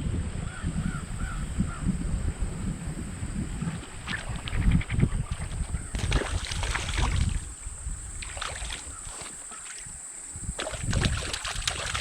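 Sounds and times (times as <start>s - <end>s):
wind gusting on microphone: 0.0s - 12.0s
light water splashes: 3.5s - 12.0s
stream flowing: 3.6s - 12.0s.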